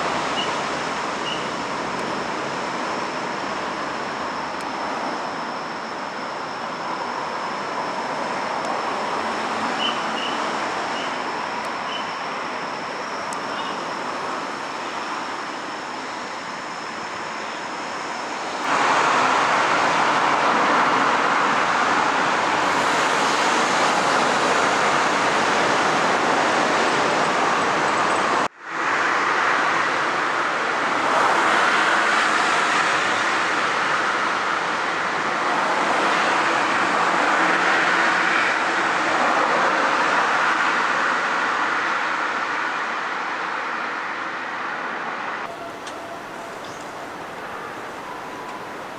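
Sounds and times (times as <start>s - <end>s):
road traffic passing at speed: 0.0s - 48.9s.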